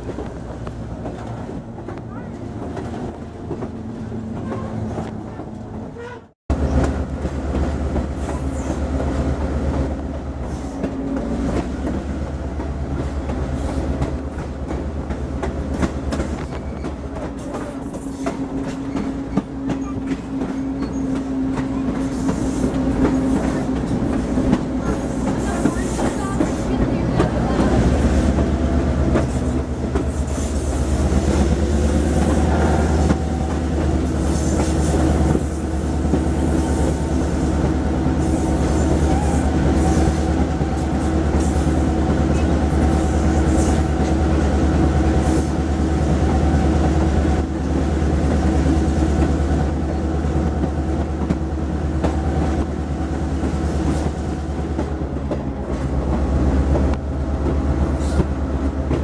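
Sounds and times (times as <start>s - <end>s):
train engine hum: 0.0s - 59.0s.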